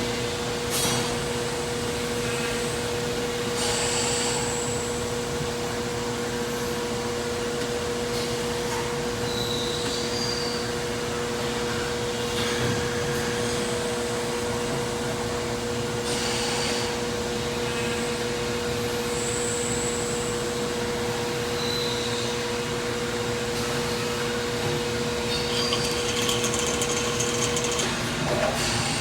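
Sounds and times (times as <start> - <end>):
machine motor hum: 25.3 - 28.8
metal machining noise: 25.3 - 29.0.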